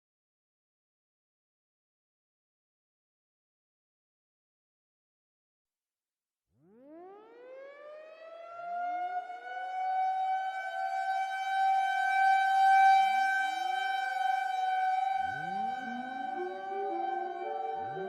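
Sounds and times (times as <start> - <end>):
civil defense siren wailing: 6.7 - 18.0.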